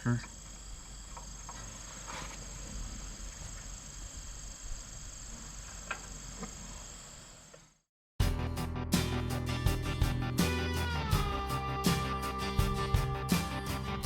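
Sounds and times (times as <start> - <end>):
crickets chirping: 0.0 - 7.8
guitar music: 8.2 - 14.0.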